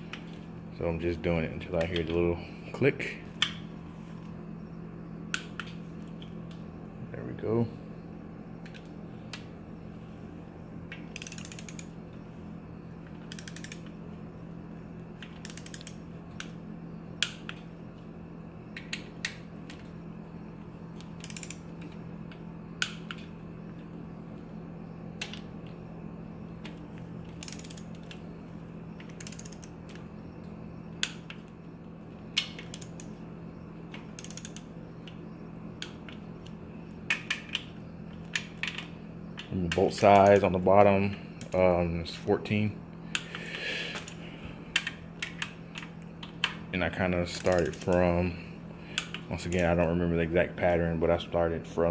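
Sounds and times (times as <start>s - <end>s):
torque wrench clicking: 10.9s - 11.9s, 13.2s - 13.9s, 15.2s - 16.5s, 21.1s - 21.6s, 27.4s - 28.2s, 29.0s - 29.7s, 32.4s - 33.1s, 34.0s - 34.7s, 47.3s - 48.0s.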